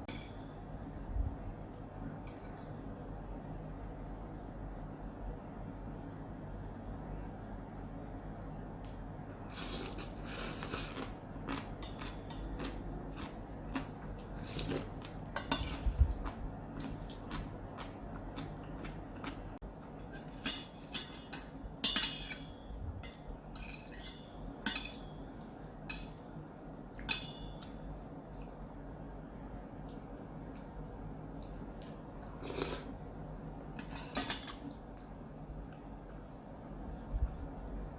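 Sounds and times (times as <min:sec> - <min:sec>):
cutlery clinking against a bowl: 0:02.3 - 0:02.7, 0:11.6 - 0:13.3, 0:14.6 - 0:17.5, 0:20.1 - 0:25.2, 0:25.9 - 0:26.2, 0:27.0 - 0:27.8, 0:33.8 - 0:34.8.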